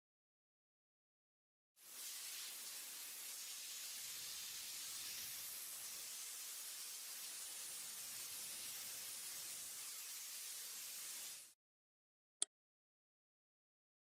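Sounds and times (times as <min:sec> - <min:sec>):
steady high-pitched hiss: 0:01.8 - 0:11.6.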